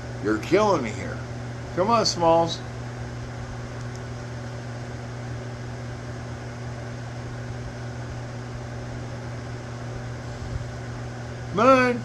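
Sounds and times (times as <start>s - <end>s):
low electrical hum: 0.0s - 12.0s
constant hiss: 10.0s - 12.0s.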